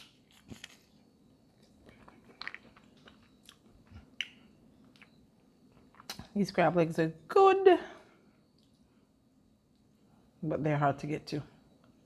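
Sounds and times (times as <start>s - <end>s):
soft chewing: 1.5s - 6.4s.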